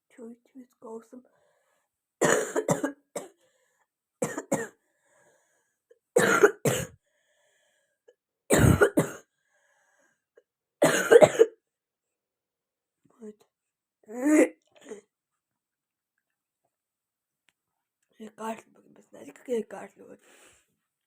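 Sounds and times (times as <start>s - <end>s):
girl coughing: 2.2s - 3.4s, 4.2s - 4.8s, 6.2s - 7.0s, 8.5s - 9.3s, 10.8s - 11.6s, 14.1s - 15.0s.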